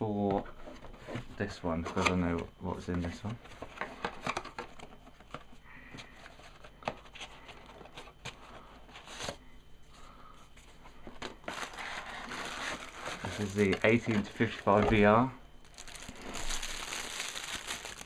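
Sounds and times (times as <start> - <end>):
cardboard and wrapping rustling: 10.6 - 18.0.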